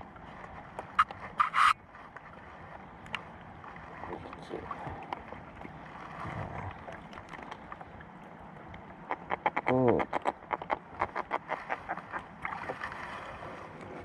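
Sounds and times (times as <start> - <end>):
light ticks: 3.0 - 3.2.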